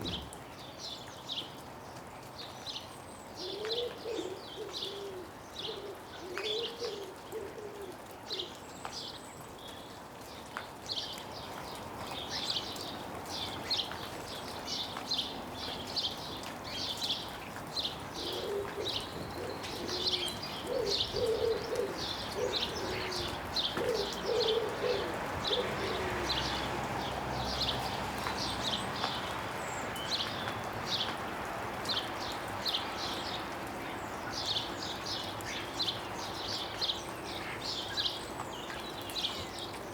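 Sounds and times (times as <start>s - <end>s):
water dripping: 7.8s - 39.9s
small birds chirping: 8.4s - 31.2s
low cooing: 18.2s - 26.6s.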